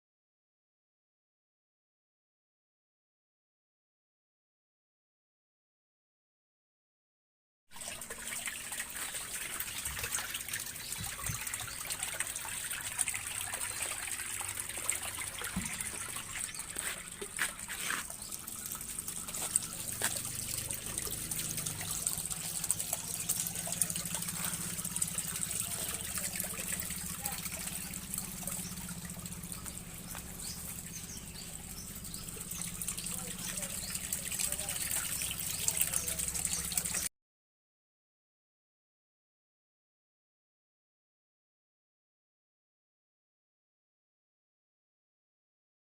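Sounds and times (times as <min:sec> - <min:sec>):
water trickling: 0:07.8 - 0:37.1
low machine hum: 0:10.6 - 0:36.9.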